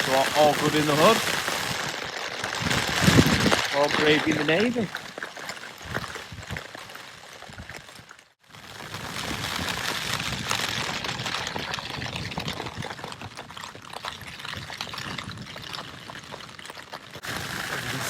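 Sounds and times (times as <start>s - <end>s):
heavy rain on a tent: 0.0s - 5.0s, 8.4s - 12.1s, 17.2s - 18.0s.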